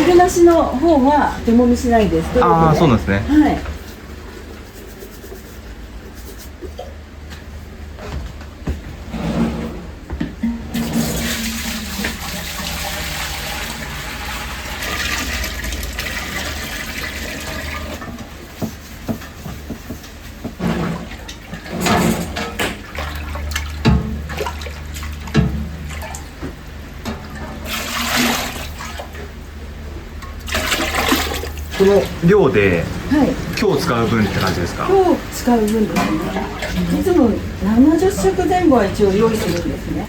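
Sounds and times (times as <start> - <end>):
water running from tap: 10.8 - 18.0, 27.6 - 29.2.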